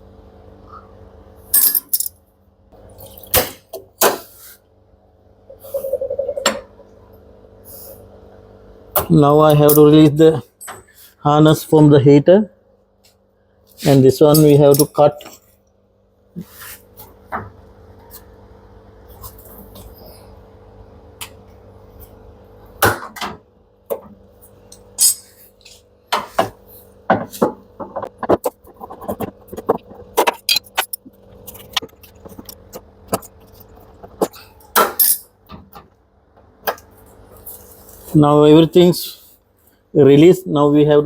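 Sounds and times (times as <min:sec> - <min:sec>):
faint hum: 0:00.0 - 0:41.0
tools clicking and clinking on metal: 0:14.3 - 0:15.3, 0:24.7 - 0:25.8.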